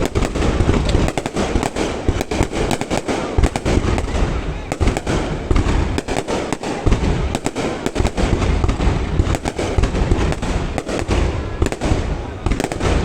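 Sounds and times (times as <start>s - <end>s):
low rumble of booms: 0.0s - 1.2s
fireworks bursting and cracking: 0.0s - 13.0s.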